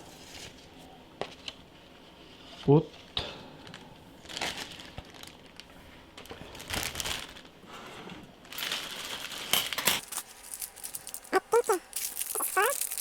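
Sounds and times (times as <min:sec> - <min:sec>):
plastic packaging rustling: 0:03.7 - 0:07.7, 0:08.4 - 0:13.0.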